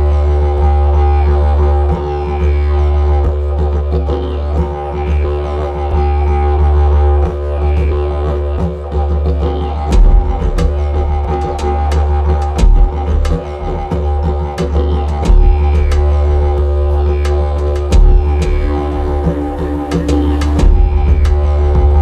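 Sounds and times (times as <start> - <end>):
deep drone with held tones: 0.0 - 22.0
sharp percussive hits: 17.8 - 22.0.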